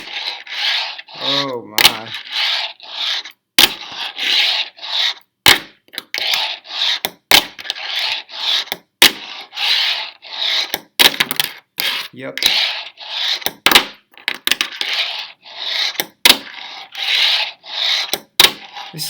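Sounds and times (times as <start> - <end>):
fingerboard wheels rolling rasp: 0.0 - 5.3, 6.0 - 19.0.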